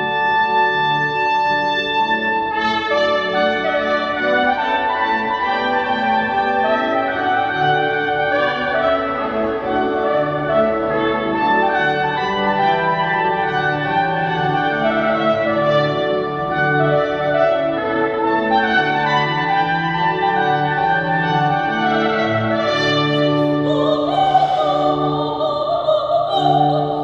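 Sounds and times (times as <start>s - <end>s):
trumpet melody: 0.0s - 26.7s
sustained accompaniment: 0.0s - 27.0s.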